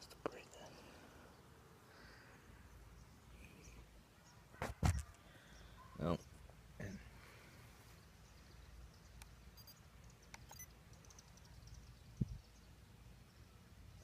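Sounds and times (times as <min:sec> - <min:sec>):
faint high chirps: 0:05.1 - 0:07.0, 0:08.0 - 0:12.7.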